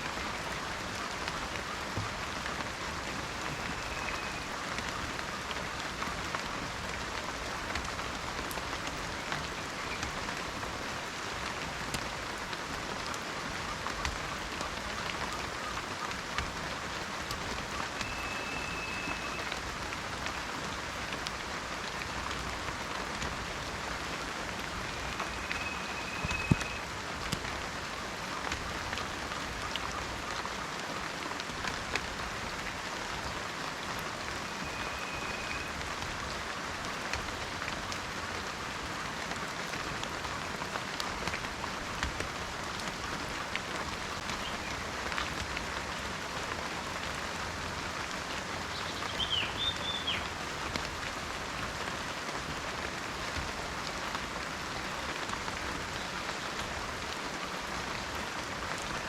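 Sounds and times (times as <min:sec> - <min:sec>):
raindrops pattering: 0:00.0 - 0:59.0
steady rain in forest: 0:00.0 - 0:59.0
bird call: 0:03.3 - 0:04.6, 0:17.8 - 0:19.6, 0:24.9 - 0:26.9, 0:34.5 - 0:35.8, 0:48.7 - 0:50.3.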